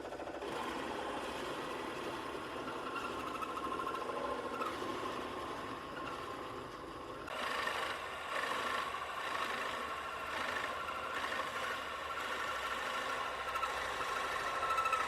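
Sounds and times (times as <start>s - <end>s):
woodworking machine running: 0.0s - 15.0s
rough wood cutting noise: 7.3s - 15.0s.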